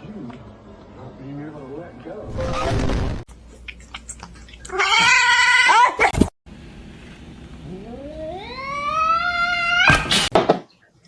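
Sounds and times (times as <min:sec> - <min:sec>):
cat meowing: 0:04.7 - 0:05.9, 0:07.9 - 0:10.1.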